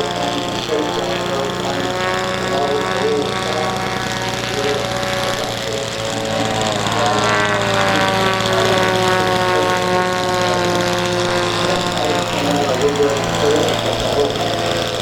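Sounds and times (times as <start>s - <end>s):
model aircraft engine flying past: 0.0s - 15.0s
steady low hum: 0.0s - 15.0s.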